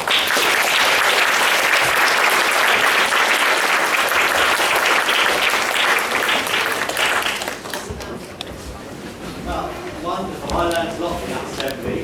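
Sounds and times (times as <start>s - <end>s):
audience applauding: 0.0s - 8.1s.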